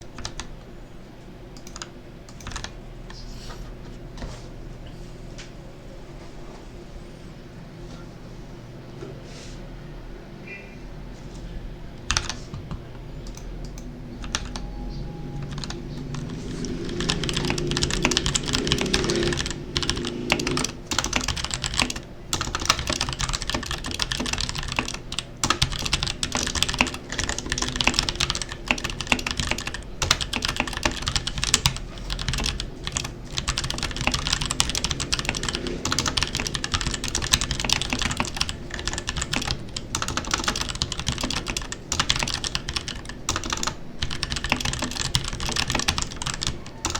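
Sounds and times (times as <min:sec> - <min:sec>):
mechanical keyboard typing: 0:00.0 - 0:00.6, 0:01.6 - 0:02.8, 0:12.0 - 0:14.7, 0:15.3 - 0:46.9.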